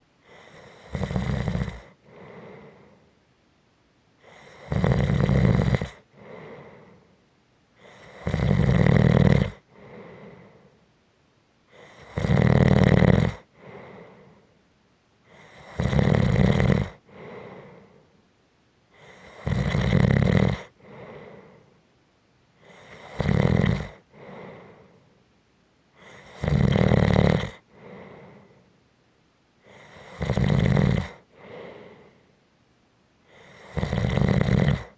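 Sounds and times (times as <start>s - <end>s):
person snoring: 0.3s - 3.0s, 4.2s - 7.0s, 7.8s - 10.7s, 11.8s - 14.4s, 15.3s - 18.0s, 19.0s - 21.7s, 22.6s - 25.0s, 26.0s - 28.6s, 29.7s - 32.2s, 33.3s - 34.9s.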